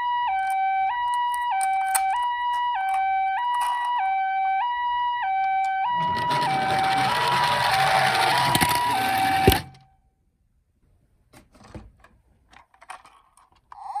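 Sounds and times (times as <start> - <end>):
toy two-tone siren: 0.0 - 9.9
loud rough rattling: 5.9 - 9.8.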